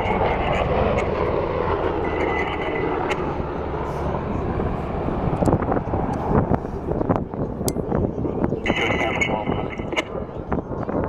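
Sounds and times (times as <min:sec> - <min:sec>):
helicopter flying past: 0:00.0 - 0:11.0.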